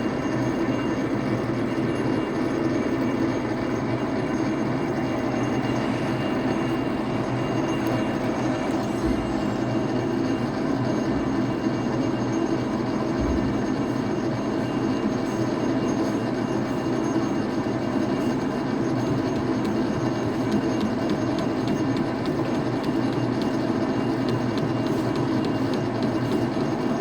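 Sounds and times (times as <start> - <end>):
metal lathe running: 0.0 - 27.0.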